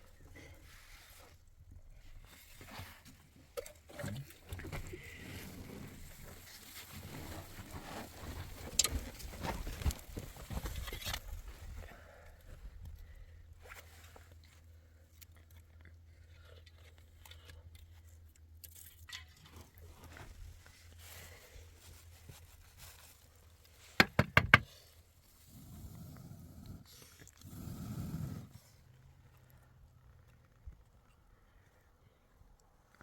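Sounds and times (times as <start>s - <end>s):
rustling and scraping handling: 4.4s - 11.8s, 19.3s - 25.5s
sharp knocks: 24.0s - 24.6s.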